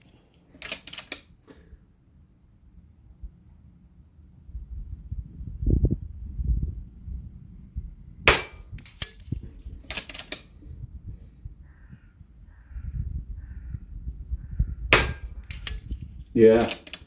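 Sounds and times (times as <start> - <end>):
rifle action clicks: 0.0 - 1.3, 9.9 - 10.5, 15.0 - 16.0, 16.6 - 17.0
air rifle shot: 8.3 - 9.1, 14.9 - 15.8.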